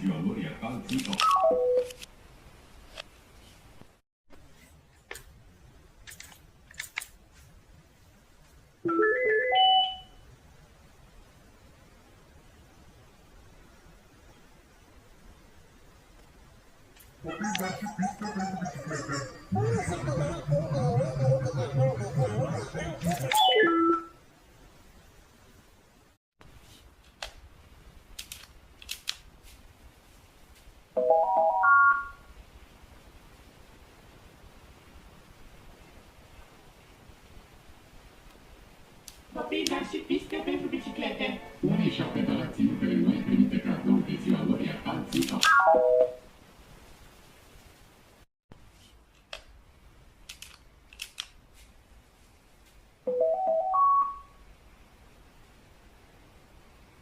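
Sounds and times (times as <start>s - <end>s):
sharp clicks: 28.2s - 29.3s, 50.3s - 51.4s
television power-on chime: 31.0s - 32.3s, 53.1s - 54.4s.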